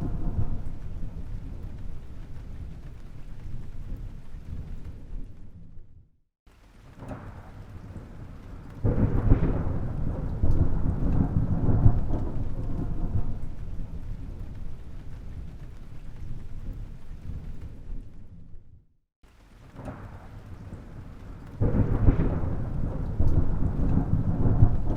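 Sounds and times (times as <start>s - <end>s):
thunder rumbling and cracking: 0.0s - 24.9s.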